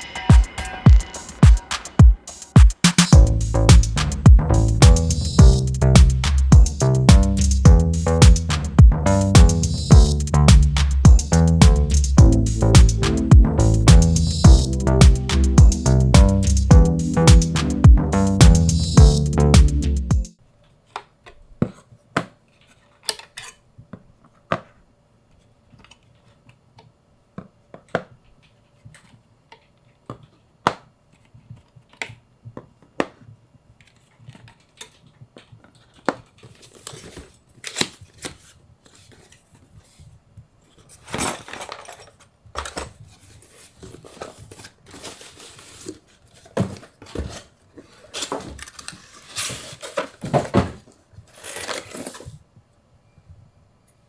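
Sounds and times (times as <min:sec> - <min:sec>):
packaging rustling and scraping: 0:33.7 - 0:52.5.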